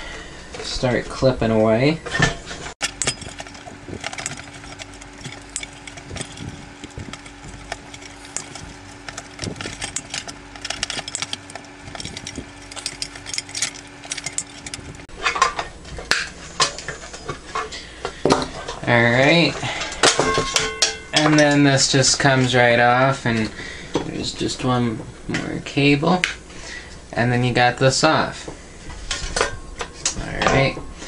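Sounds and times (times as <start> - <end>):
faint steady hum: 0.0 - 31.0
small metallic clatter: 2.1 - 18.9, 19.7 - 21.7
wire cutters snipping wires: 2.8 - 15.1.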